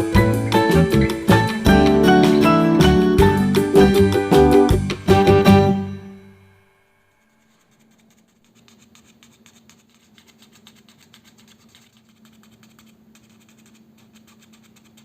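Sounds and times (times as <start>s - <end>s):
background music: 0.0s - 6.7s
faint hum with fine rattle: 7.2s - 15.0s.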